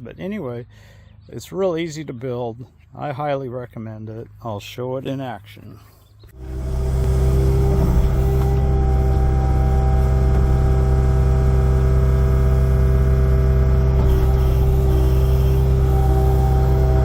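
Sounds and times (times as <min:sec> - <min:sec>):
constant even tone: 0:06.3 - 0:17.0
excavator diesel engine running: 0:06.4 - 0:17.0.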